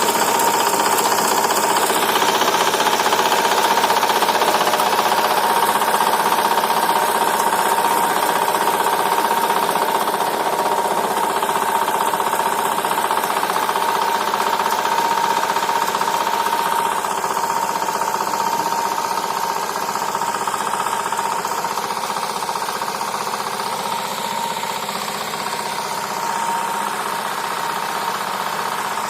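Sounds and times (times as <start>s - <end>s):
walk-behind tractor engine running: 0.0s - 29.0s.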